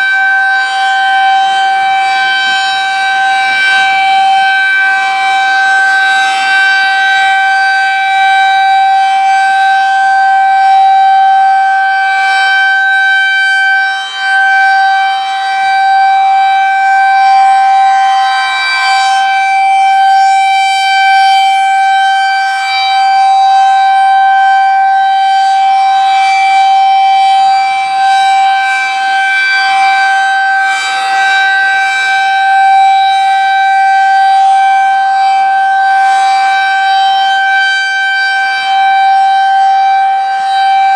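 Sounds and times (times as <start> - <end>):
rotating warning siren steady tone: 0.0 - 40.9.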